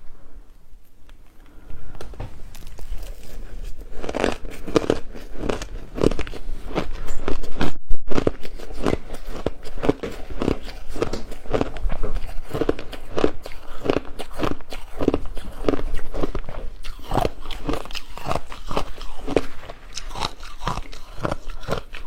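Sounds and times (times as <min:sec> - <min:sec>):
ice being bitten and crunched: 0:02.6 - 0:22.0.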